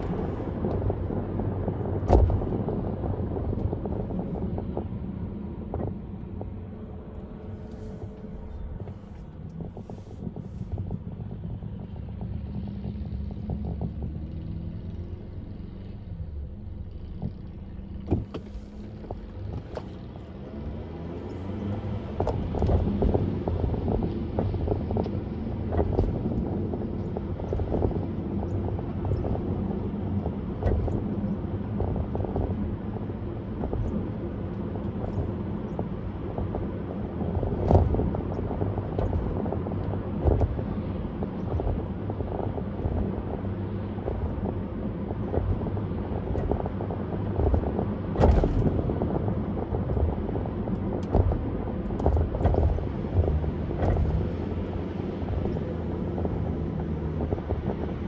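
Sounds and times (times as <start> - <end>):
knocks over road bumps: 0.0 - 6.6, 17.0 - 20.2, 22.0 - 58.0
tyre and engine rumble: 0.0 - 58.0.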